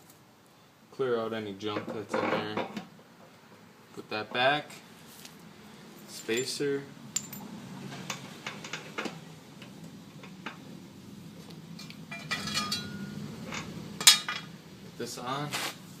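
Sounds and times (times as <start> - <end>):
low steady hum: 0.0 - 16.0
metal parts clinking: 7.2 - 7.5, 11.8 - 14.5.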